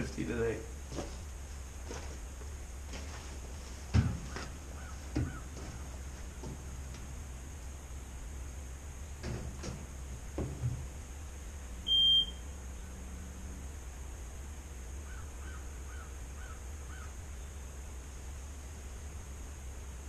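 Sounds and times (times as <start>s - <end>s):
small knocks: 3.8s - 7.1s, 9.2s - 10.9s
warning beeper: 11.9s - 12.4s.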